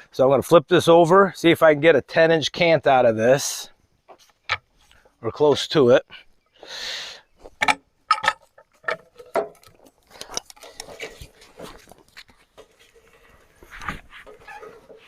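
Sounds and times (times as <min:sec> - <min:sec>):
metallic clicks and clanks: 0:07.6 - 0:11.2.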